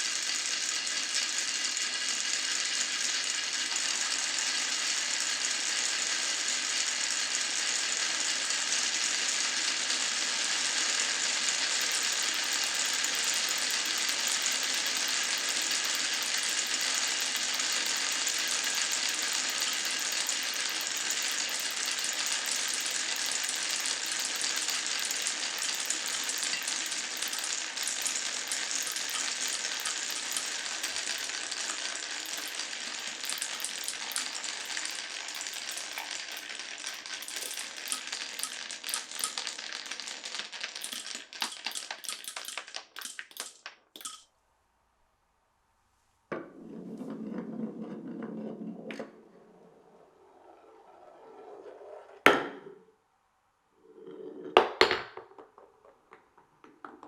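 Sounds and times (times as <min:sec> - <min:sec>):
glass marbles rolling and clicking: 0:10.6 - 0:44.3.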